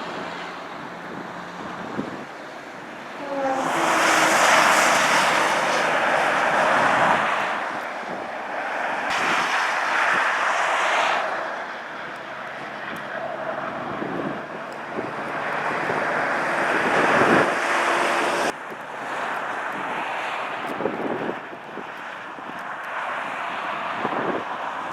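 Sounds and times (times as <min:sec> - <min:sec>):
steady traffic rush: 0:00.0 - 0:24.9
vehicles whooshing past: 0:00.0 - 0:24.9
wind on microphone: 0:00.0 - 0:24.9.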